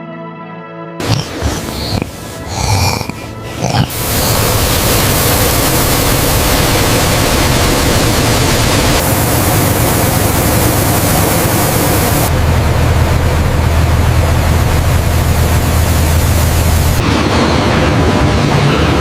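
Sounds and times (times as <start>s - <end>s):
loud rushing hiss: 1.0s - 12.8s, 14.7s - 17.3s
low hum: 1.0s - 17.2s.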